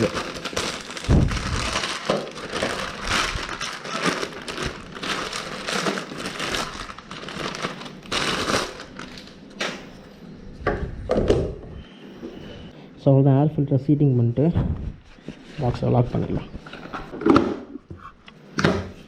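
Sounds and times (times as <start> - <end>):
plastic packaging crinkling: 0.0 - 9.8.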